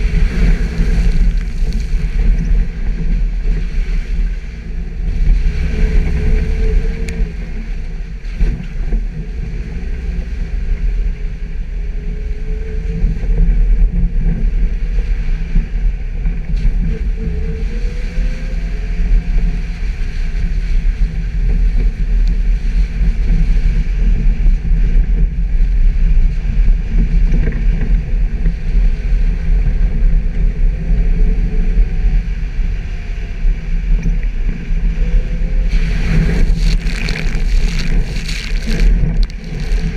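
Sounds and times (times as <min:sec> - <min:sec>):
car engine rumbling: 0:00.0 - 0:14.8, 0:31.9 - 0:39.9
wind buffeting microphone: 0:00.0 - 0:39.9.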